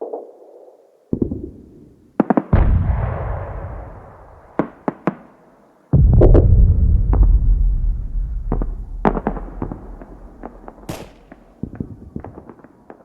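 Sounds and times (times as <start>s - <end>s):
heavy explosions rumbling: 6.5s - 11.7s
sharp gunshots: 9.0s - 11.8s.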